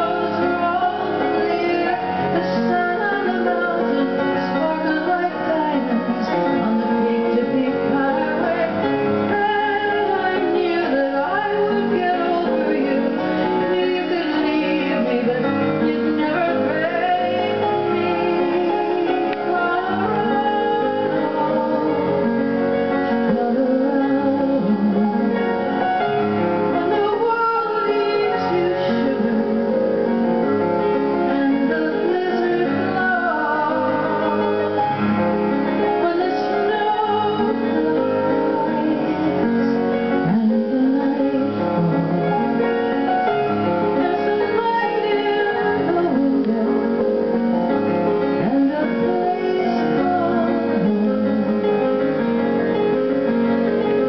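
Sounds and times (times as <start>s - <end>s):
piano: 0.0s - 54.0s
woman singing: 0.0s - 54.0s.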